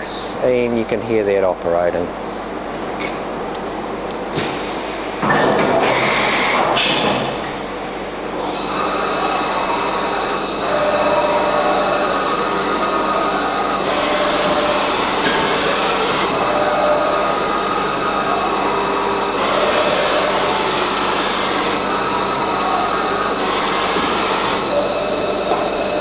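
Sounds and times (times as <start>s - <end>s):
machine mechanical hum: 0.0s - 26.0s
steady high tones: 8.4s - 26.0s.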